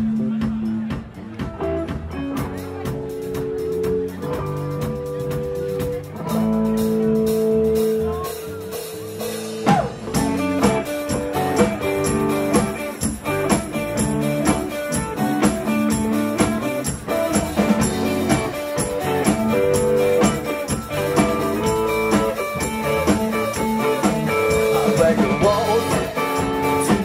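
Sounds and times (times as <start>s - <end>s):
drum kit: 0.0s - 27.0s
electric guitar: 0.0s - 27.0s
tambourine: 10.6s - 27.0s.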